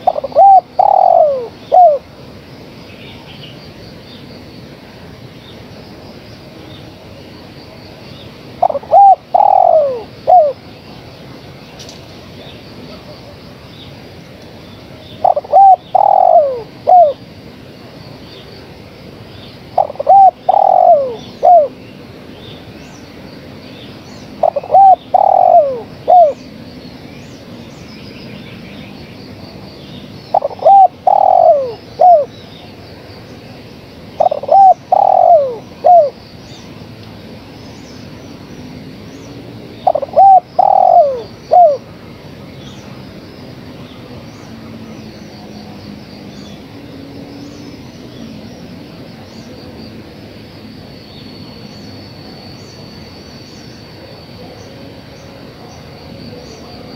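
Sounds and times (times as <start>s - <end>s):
small birds chirping: 0.0s - 2.0s, 5.4s - 36.8s, 37.4s - 41.8s
dove cooing: 0.0s - 2.1s, 8.6s - 10.6s, 15.2s - 17.2s, 19.7s - 21.8s, 24.4s - 26.4s, 30.3s - 32.3s, 34.2s - 36.2s, 39.8s - 41.9s.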